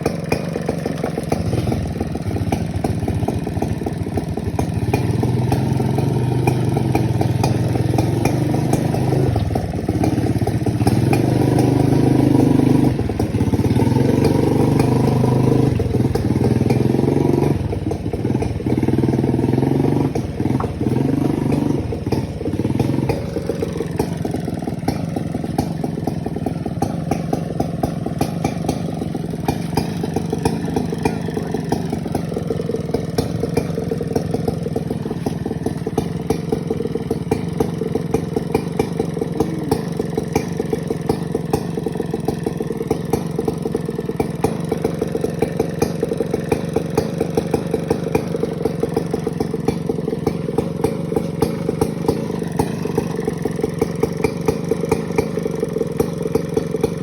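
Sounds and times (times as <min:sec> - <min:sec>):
chainsaw cutting timber: 0:00.0 - 0:57.0.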